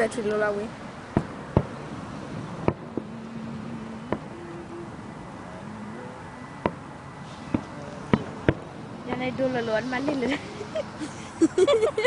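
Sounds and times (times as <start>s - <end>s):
steady outdoor noise: 0.0s - 12.0s
distant fireworks bangs: 1.1s - 4.8s, 6.6s - 9.6s.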